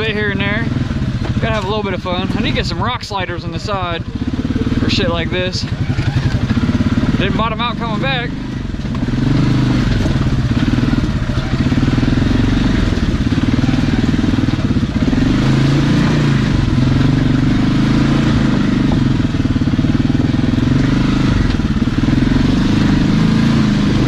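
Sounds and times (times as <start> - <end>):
engine running under load: 0.0 - 24.0.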